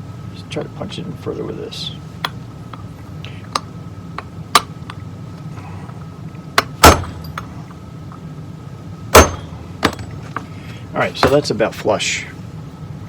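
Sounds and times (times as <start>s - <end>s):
hammer striking a metal punch: 3.5s - 4.8s, 6.6s - 7.5s, 9.1s - 10.2s, 11.2s - 11.5s.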